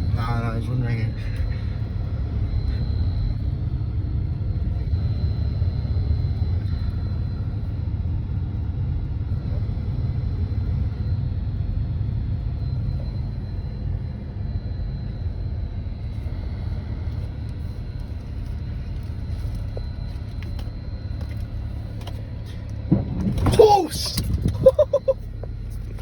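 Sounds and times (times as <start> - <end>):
car interior engine and road rumble: 15.1 - 26.0.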